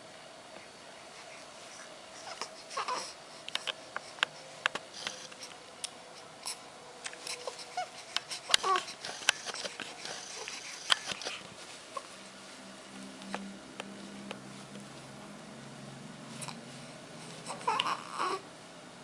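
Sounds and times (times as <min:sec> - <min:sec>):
faint steady hum: 0:00.0 - 0:19.0
baby babbling: 0:02.2 - 0:03.1, 0:07.3 - 0:11.4, 0:17.4 - 0:18.4.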